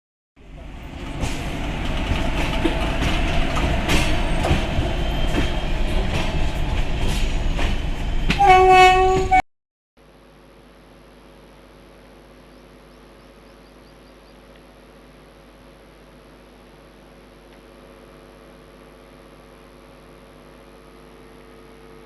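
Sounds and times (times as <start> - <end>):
train rumbling past: 0.4 - 9.4
wheels clacking over rail joints: 0.8 - 8.4
train horn: 8.3 - 9.4
faint steady hum: 10.0 - 22.0.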